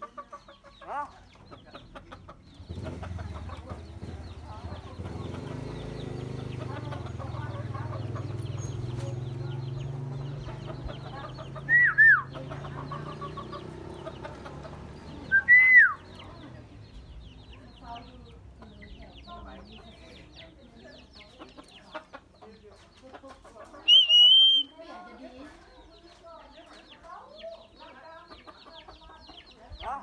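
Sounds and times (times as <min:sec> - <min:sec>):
bird clucking: 0:00.0 - 0:30.0
bird whistles sliding down: 0:23.9 - 0:24.7.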